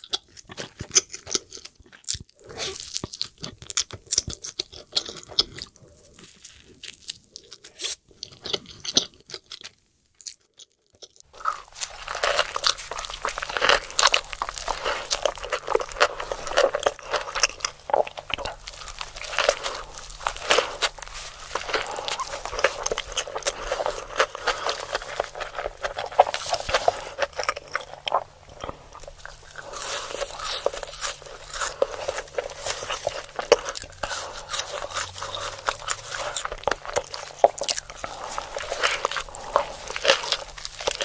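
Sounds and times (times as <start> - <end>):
crunchy bites and chewing: 0.0 - 41.0
low steady hum: 11.3 - 41.0.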